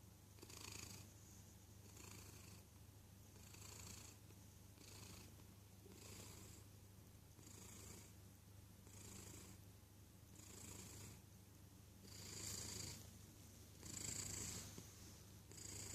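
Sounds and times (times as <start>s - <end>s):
cat snoring softly: 0.4s - 1.1s, 1.8s - 2.7s, 3.4s - 6.7s, 7.4s - 8.2s, 8.8s - 9.6s, 10.3s - 11.2s, 12.0s - 13.1s, 13.8s - 15.9s.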